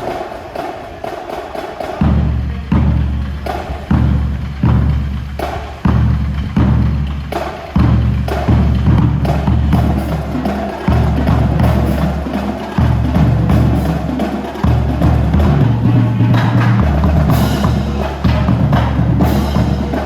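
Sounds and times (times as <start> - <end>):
drum strikes: 0.0 - 20.0
marching band playing: 0.0 - 20.0.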